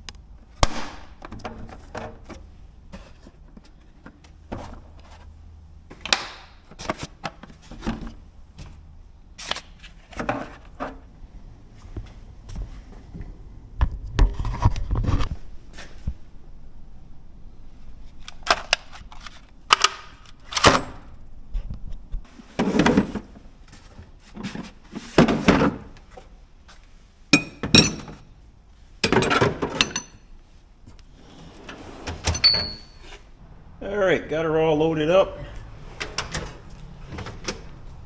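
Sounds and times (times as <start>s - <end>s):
hand tools clinking in metal drawers: 27.4s - 28.3s, 29.0s - 30.4s, 31.6s - 33.2s.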